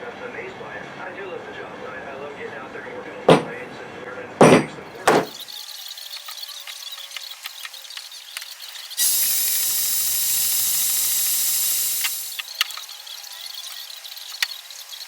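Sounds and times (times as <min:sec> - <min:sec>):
hiss of escaping air: 0:09.0 - 0:12.4.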